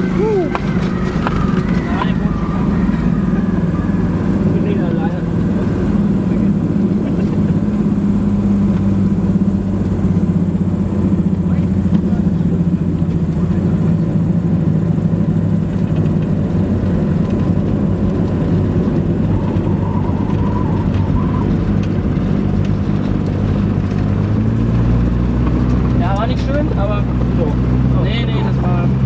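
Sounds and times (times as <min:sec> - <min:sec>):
propeller plane engine droning: 0:00.0 - 0:29.0.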